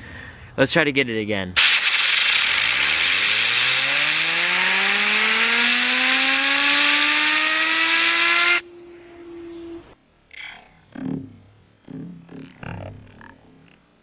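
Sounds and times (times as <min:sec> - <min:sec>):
rushing hiss of air: 0:01.6 - 0:04.4
fidget spinner whine: 0:01.6 - 0:10.0.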